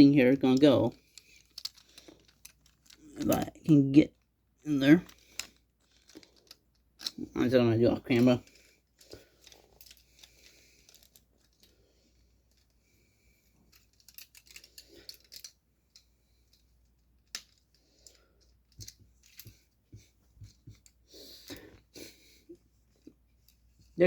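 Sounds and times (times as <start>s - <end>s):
plastic toy parts clicking: 0.5s - 4.2s, 4.9s - 7.2s, 8.1s - 11.7s, 13.7s - 19.5s.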